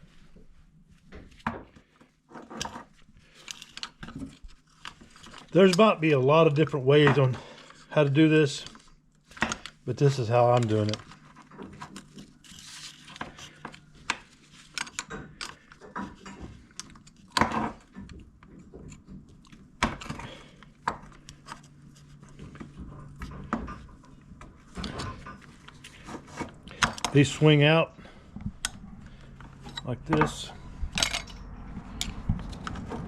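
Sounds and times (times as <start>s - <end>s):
metallic clicks and knocks of tools: 29.7s - 32.9s.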